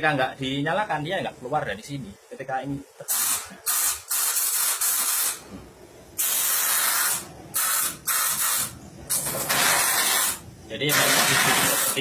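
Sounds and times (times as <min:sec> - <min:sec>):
steam nozzle hissing: 0:03.1 - 0:05.4, 0:06.2 - 0:12.0.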